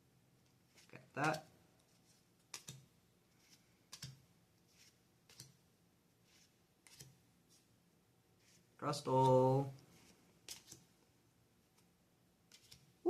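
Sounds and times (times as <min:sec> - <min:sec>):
trading cards flipping: 0:00.4 - 0:05.6, 0:06.3 - 0:07.7, 0:09.9 - 0:10.9, 0:12.5 - 0:13.0.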